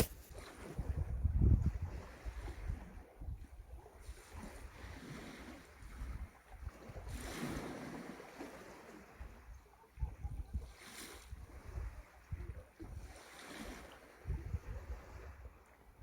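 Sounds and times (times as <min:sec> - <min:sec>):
wind gusting on microphone: 0:00.0 - 0:05.0, 0:10.0 - 0:16.0.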